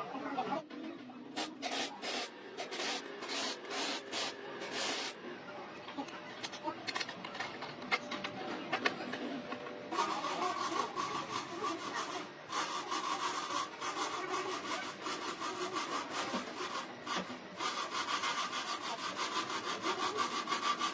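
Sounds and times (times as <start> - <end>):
tool rasping material: 1.4 - 5.2, 9.9 - 20.9.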